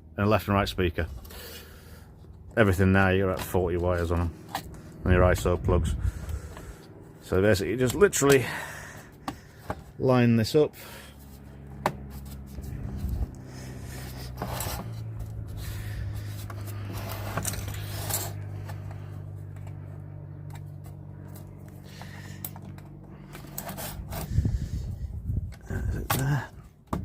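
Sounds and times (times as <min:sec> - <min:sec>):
steady low hum: 0:00.0 - 0:27.0
metal and plastic clicks and scraping: 0:11.8 - 0:19.8, 0:20.4 - 0:24.4.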